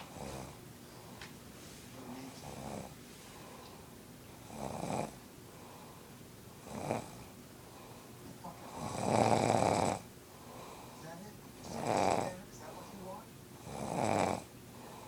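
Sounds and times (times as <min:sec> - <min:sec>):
man snoring: 0:00.1 - 0:00.6, 0:02.4 - 0:02.9, 0:04.4 - 0:05.2, 0:06.6 - 0:07.2, 0:08.6 - 0:10.0, 0:11.6 - 0:12.4, 0:13.6 - 0:14.5.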